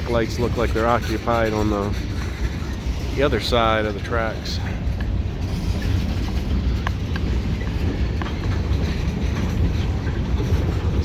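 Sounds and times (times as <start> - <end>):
freight cars rolling on rails: 0.0 - 11.0
wheels clicking and squeaking: 0.0 - 11.0.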